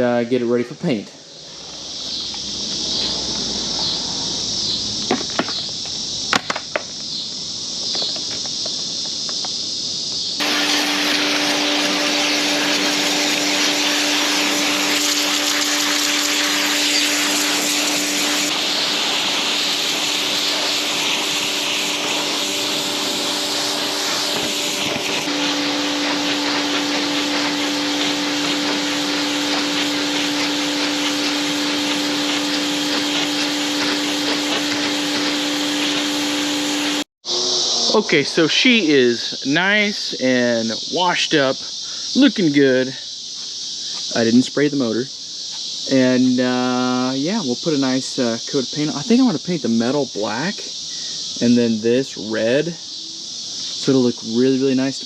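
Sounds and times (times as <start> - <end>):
pressure washer motor humming: 10.4 - 37.1
pressure washer spraying: 10.4 - 37.1.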